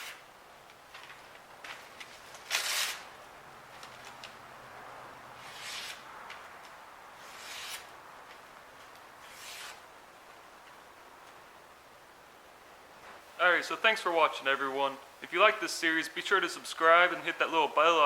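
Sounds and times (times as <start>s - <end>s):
knife slicing paper: 2.4s - 3.1s, 5.4s - 6.0s, 7.2s - 7.9s, 9.2s - 9.8s.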